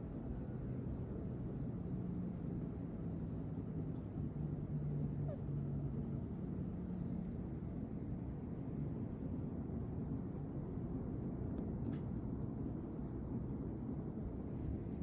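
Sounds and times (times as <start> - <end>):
cat snoring: 1.2 - 1.8, 3.0 - 3.8, 4.8 - 5.6, 6.5 - 7.4, 10.6 - 11.4, 12.6 - 13.3.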